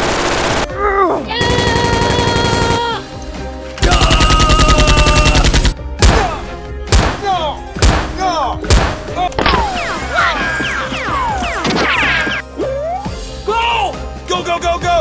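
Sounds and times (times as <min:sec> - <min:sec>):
background music: 0:00.0 - 0:15.0
automatic gunfire: 0:01.4 - 0:02.9, 0:03.8 - 0:05.8
heavy single gunshots: 0:06.0 - 0:07.2, 0:07.8 - 0:09.6.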